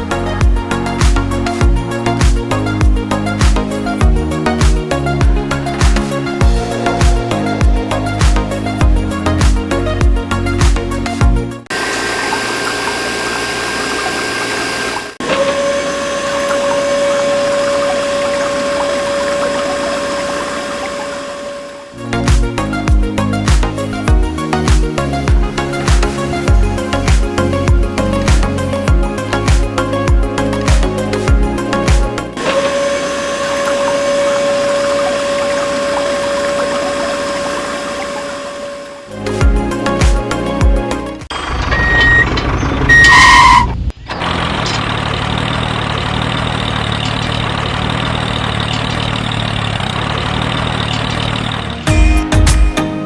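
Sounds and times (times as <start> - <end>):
small pump motor whining: 11.7 - 22.1, 32.4 - 39.2
rushing water: 11.7 - 41.2.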